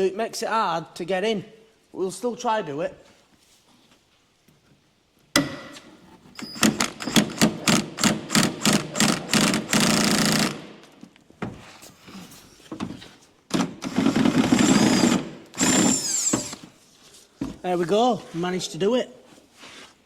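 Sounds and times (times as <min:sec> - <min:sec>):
power tool hammering: 0:06.6 - 0:10.7, 0:13.5 - 0:16.6
power tool high whine: 0:14.6 - 0:16.6.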